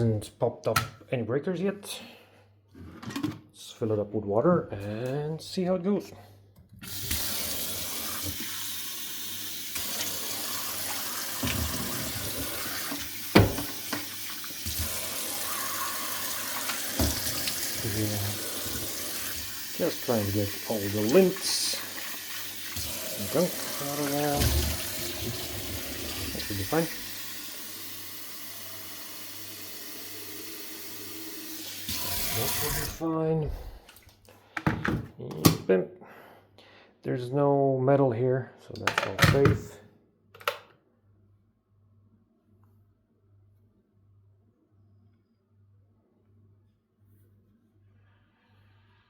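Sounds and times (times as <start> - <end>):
tap water running into kettle: 6.8 - 33.0.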